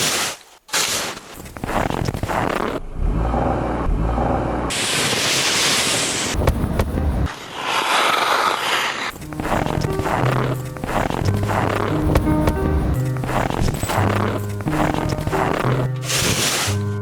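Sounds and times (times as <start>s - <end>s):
rough rushing noise: 1.4s - 16.8s
vehicle engine rumble: 2.8s - 4.9s, 6.4s - 7.3s, 9.1s - 16.2s
loud hiss: 4.7s - 6.5s, 16.0s - 16.8s.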